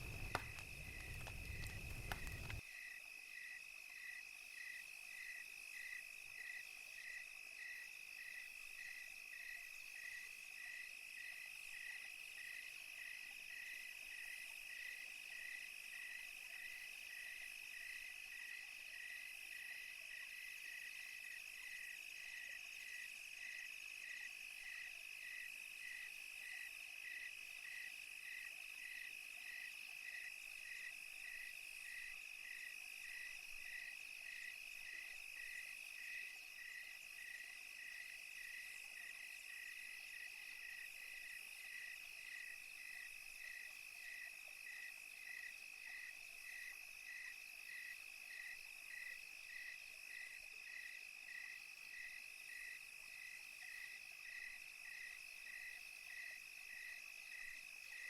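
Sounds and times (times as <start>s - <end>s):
insects trilling: 0.0s - 11.5s
crickets chirping: 0.0s - 58.0s.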